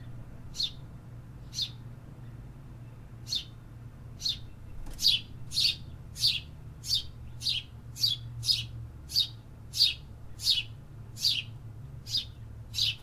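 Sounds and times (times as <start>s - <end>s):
bird chirping: 0.0s - 3.6s, 4.2s - 13.0s.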